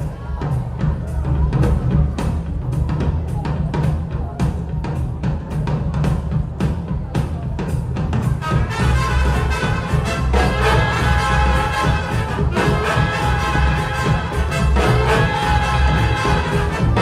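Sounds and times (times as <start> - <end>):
heavy bass line: 0.0 - 17.0.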